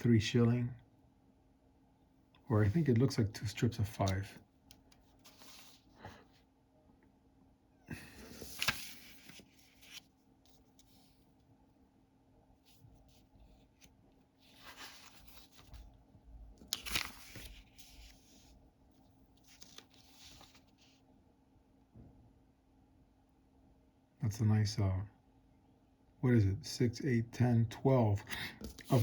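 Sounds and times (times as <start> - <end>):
faint steady hum: 0.0 - 29.0
paper envelopes rustling: 5.1 - 5.9, 7.9 - 11.1, 13.1 - 16.0, 16.6 - 18.4, 19.4 - 20.8, 28.6 - 29.0.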